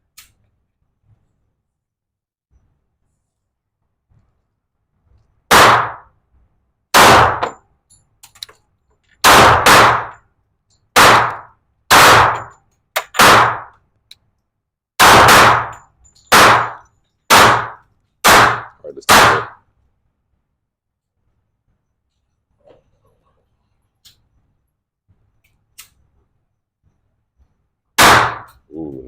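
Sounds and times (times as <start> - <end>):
handgun shots echoing indoors: 5.5 - 6.1, 6.9 - 7.6, 9.2 - 10.2, 11.0 - 13.8, 15.0 - 19.6, 28.0 - 28.6.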